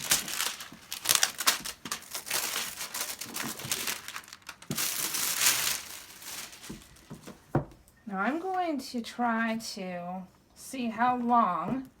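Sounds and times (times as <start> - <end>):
packaging crinkling and rustling: 0.0 - 7.7.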